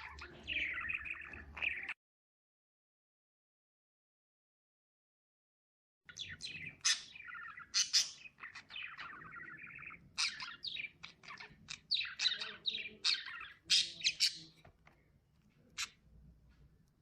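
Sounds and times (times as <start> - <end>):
lovebirds chirping: 0.0 - 2.0, 6.1 - 17.0.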